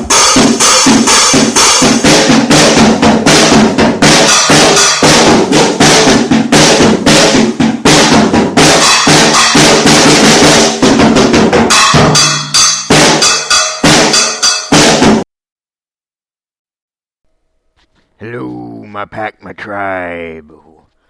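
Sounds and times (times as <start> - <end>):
drum kit playing: 0.0 - 15.2.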